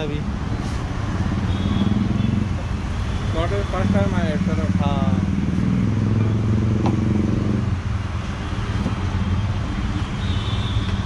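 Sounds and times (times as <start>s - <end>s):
engine droning: 1.2s - 10.0s.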